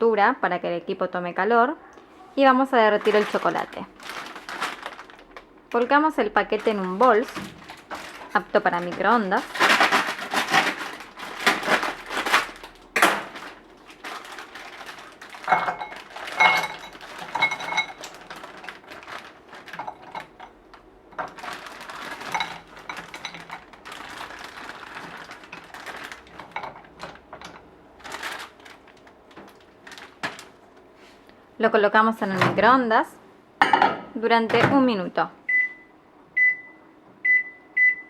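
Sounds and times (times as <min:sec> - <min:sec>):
chocolate pieces rattling into bowl: 0:03.0 - 0:05.3, 0:06.6 - 0:20.6, 0:21.2 - 0:30.5.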